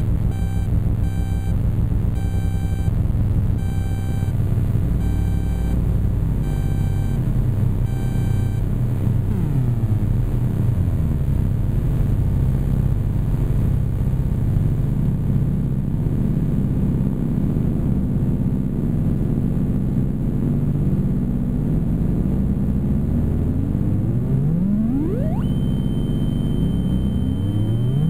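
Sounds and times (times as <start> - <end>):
synth buzzing drone: 0.0 - 28.0
synth tone sweeping upward: 23.6 - 28.0.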